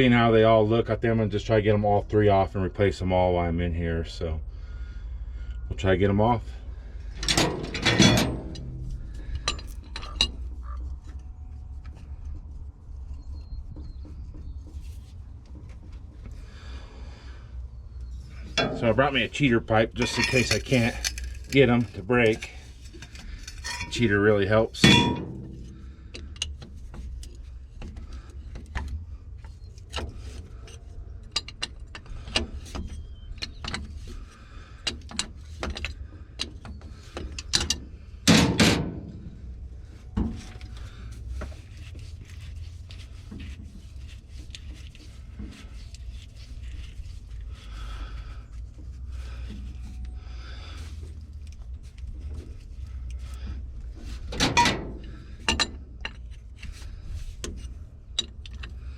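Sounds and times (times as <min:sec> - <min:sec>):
low steady rumble: 0:00.0 - 0:58.9
loud metal clank: 0:07.2 - 0:08.9, 0:18.6 - 0:19.2, 0:24.8 - 0:25.8, 0:38.3 - 0:39.3
wrenches clinking on metal: 0:07.2 - 0:10.8, 0:18.3 - 0:27.5, 0:52.3 - 0:58.9.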